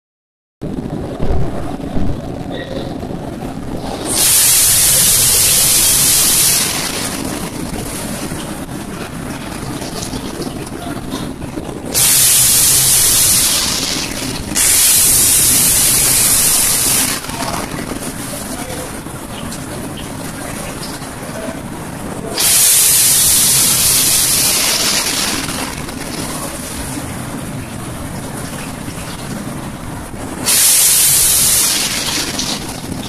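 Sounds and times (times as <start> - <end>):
dishwasher water spraying: 3.8 - 8.4, 11.9 - 18.6, 22.3 - 27.3, 30.4 - 33.0.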